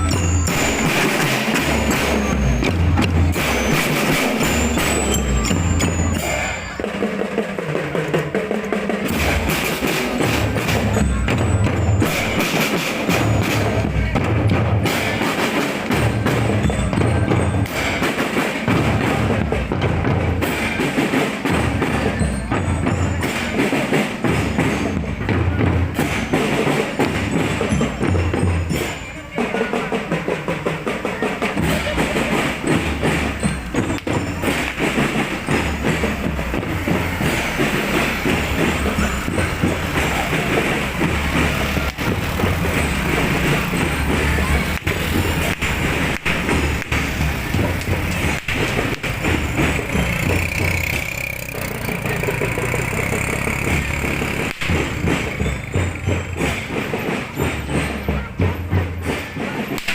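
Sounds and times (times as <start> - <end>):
music with heavy drum beat: 0.0 - 59.9.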